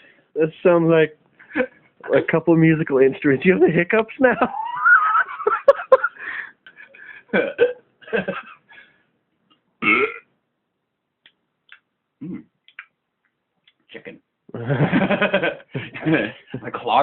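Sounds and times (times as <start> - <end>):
man belching: 7.3 - 7.8, 9.8 - 10.3, 12.2 - 12.5.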